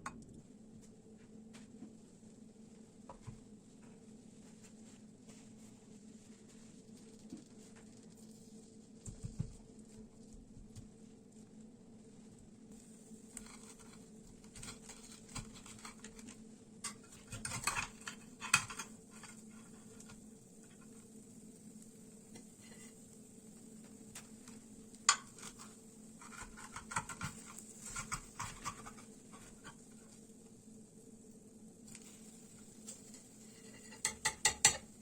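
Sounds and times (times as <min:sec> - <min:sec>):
faint steady hum: 0:00.0 - 0:35.0
dishes and utensils clinking: 0:33.6 - 0:34.9.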